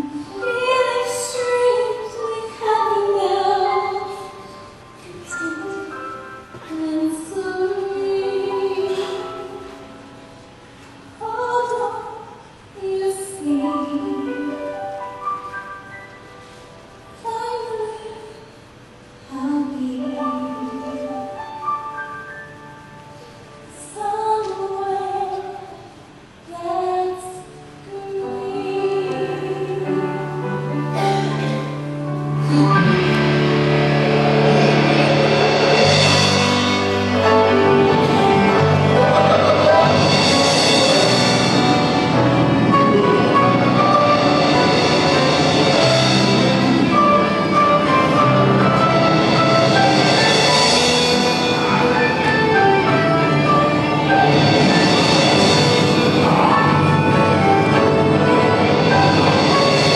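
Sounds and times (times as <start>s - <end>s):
musical accompaniment: 0.0s - 59.9s
woman singing a ballad: 0.1s - 4.4s, 5.0s - 9.7s, 11.2s - 14.8s, 17.2s - 18.5s, 19.3s - 21.4s, 23.7s - 25.9s, 26.5s - 30.3s.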